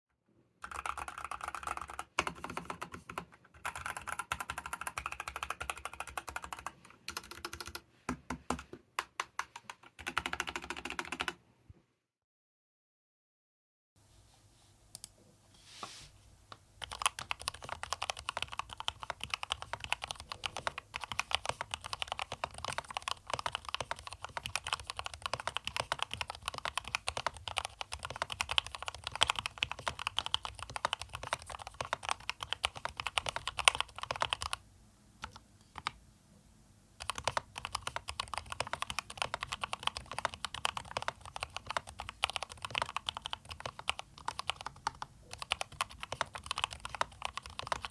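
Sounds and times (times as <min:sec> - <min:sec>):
mechanical keyboard typing: 0:00.6 - 0:11.4, 0:16.8 - 0:34.6, 0:35.2 - 0:36.0, 0:37.0 - 0:47.9.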